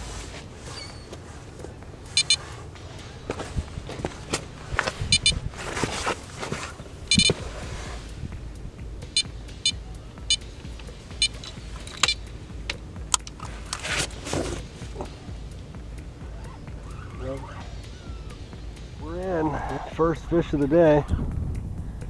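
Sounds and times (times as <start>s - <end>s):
electronic bite alarm beeping: 2.0s - 3.9s, 4.8s - 7.6s, 9.0s - 12.4s.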